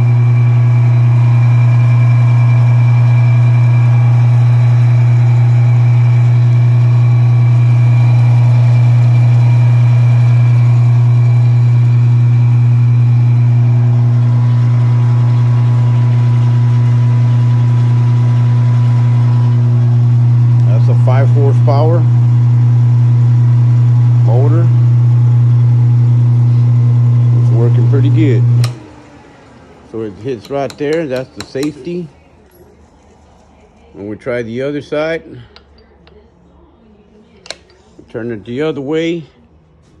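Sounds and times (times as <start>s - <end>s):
motor whine: 0.0s - 30.4s
electric motor humming: 0.0s - 32.1s.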